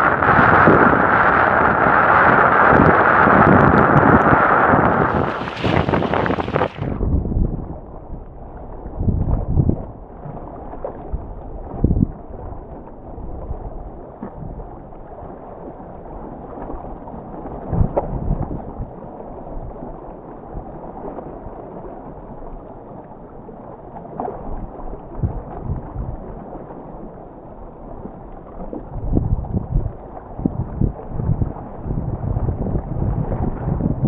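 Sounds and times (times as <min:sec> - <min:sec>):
strong wind buffeting microphone: 0:00.0 - 0:14.9, 0:17.5 - 0:19.0, 0:24.9 - 0:26.4, 0:28.7 - 0:34.0.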